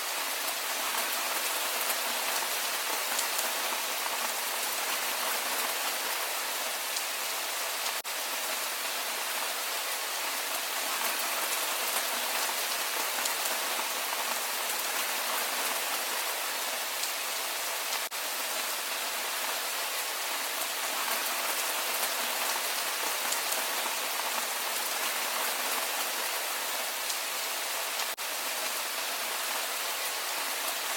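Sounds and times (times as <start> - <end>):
steady rain falling: 0.0 - 30.9.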